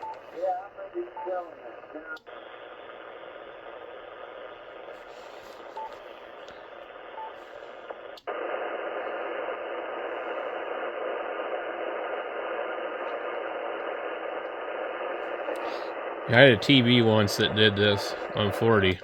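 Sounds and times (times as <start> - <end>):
radio speaker hissing: 2.0 - 19.0.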